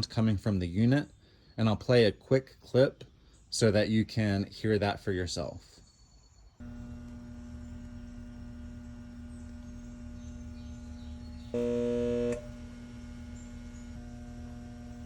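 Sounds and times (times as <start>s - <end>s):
loud burst of hum: 6.6s - 15.0s.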